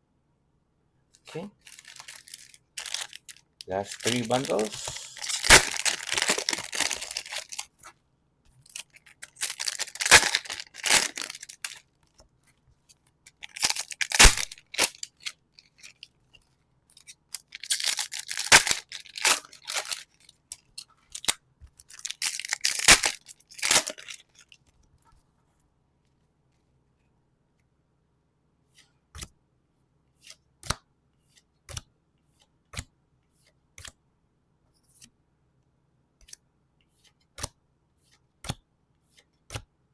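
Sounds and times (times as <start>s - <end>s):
foil packs tearing and crinkling: 1.6s - 7.7s, 8.7s - 11.8s, 13.4s - 15.3s, 17.4s - 20.1s, 21.2s - 24.3s.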